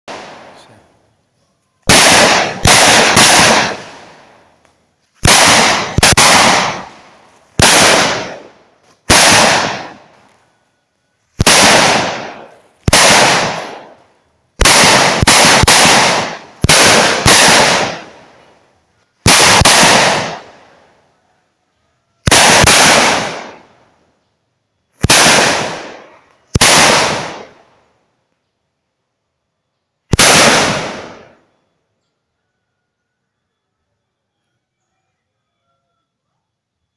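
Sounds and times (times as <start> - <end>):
firecrackers banging with echo: 0.1 - 1.0, 1.8 - 10.5, 11.3 - 20.9, 22.2 - 23.8, 25.0 - 27.8, 30.1 - 31.5.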